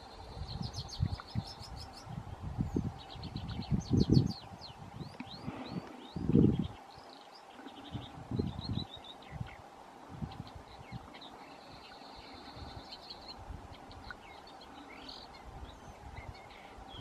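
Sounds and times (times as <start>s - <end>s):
songbirds chirping: 0.0s - 17.0s.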